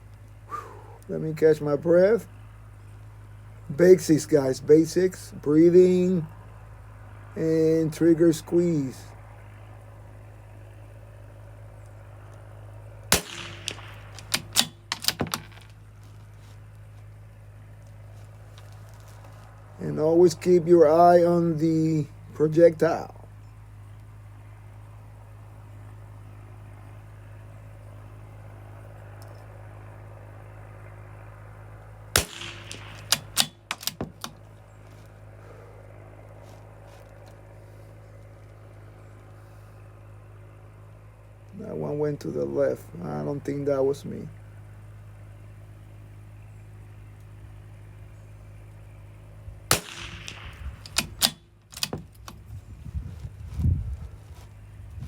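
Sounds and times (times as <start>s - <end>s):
steady low hum: 0.0s - 55.0s
rifle shot: 13.1s - 15.6s, 32.2s - 34.1s, 49.7s - 51.4s
rifle bolt metallic clicks: 13.1s - 15.7s, 32.2s - 34.4s, 49.7s - 52.4s.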